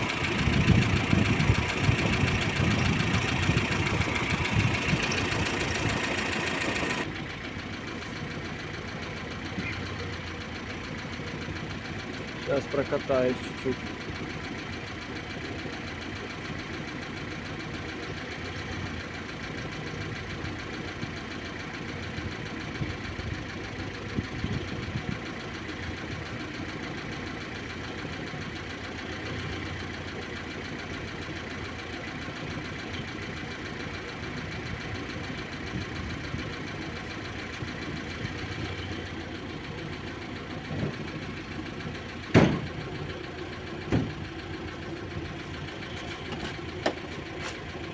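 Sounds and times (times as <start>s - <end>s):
car engine running: 0.0s - 47.9s
sharp thump: 42.3s - 42.8s, 43.9s - 44.2s.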